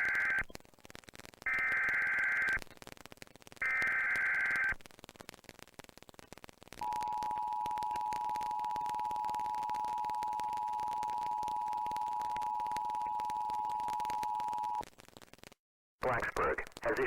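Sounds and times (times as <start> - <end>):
two-tone alarm: 6.8 - 14.8.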